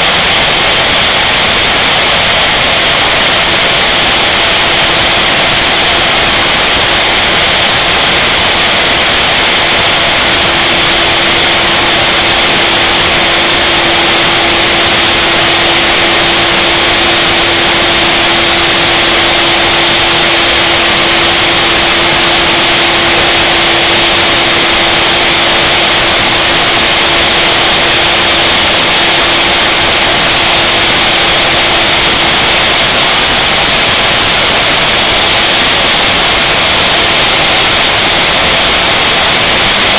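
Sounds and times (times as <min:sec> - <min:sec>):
router spindle whining: 0:00.0 - 0:39.9
low steady hum: 0:09.7 - 0:30.0.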